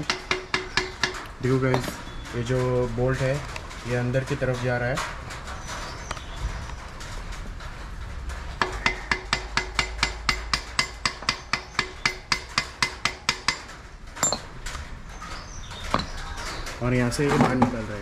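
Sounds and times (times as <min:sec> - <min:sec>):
hammer striking metal bolt: 0:00.0 - 0:02.0, 0:08.6 - 0:14.5.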